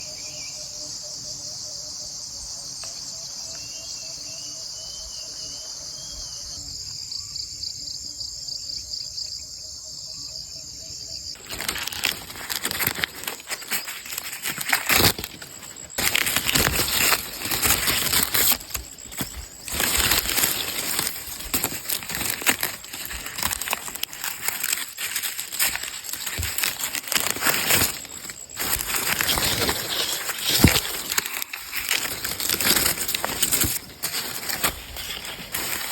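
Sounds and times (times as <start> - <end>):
insects trilling: 0.0 - 35.9
dry corn leaves rustling: 11.3 - 35.9.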